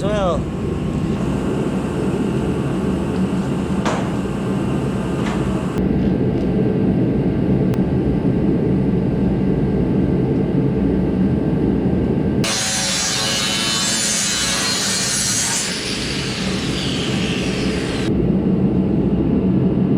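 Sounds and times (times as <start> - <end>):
shop heater roaring: 0.0 - 18.8
loud harsh hiss: 12.5 - 18.1.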